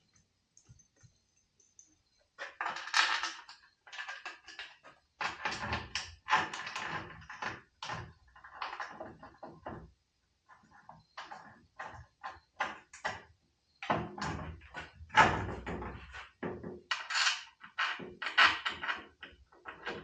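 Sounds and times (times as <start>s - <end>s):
parts knocking and clattering: 2.4s - 9.9s, 11.0s - 16.9s.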